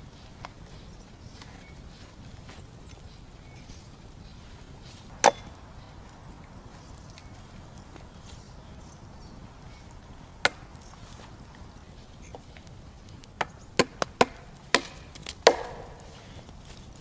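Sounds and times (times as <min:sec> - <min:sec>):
sharp chopping strikes: 0:13.4 - 0:16.4.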